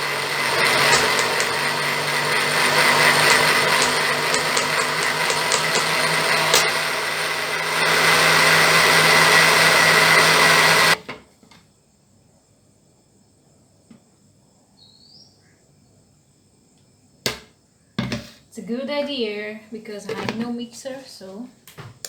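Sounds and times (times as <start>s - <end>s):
blender whining: 0.0s - 11.0s.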